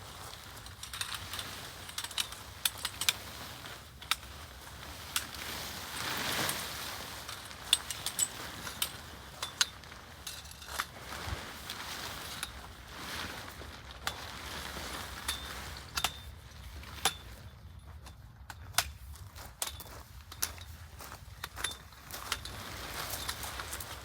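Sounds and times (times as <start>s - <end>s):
rustling: 0.0s - 16.0s, 21.8s - 24.0s.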